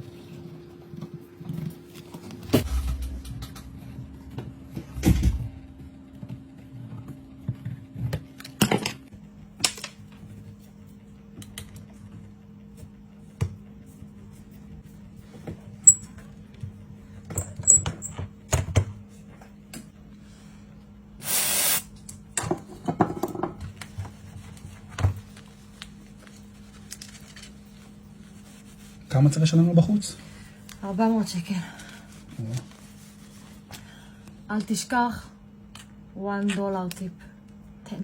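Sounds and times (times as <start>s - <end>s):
steady low hum: 0.0s - 21.2s
short hiss: 21.2s - 21.8s.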